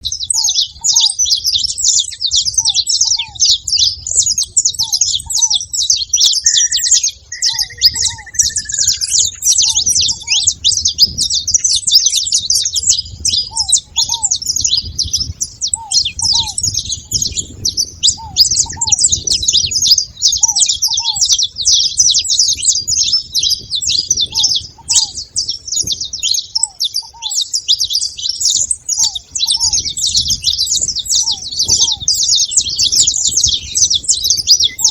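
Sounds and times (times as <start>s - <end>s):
finches chirping: 0.1s - 34.9s
brief whistle: 6.4s - 9.0s.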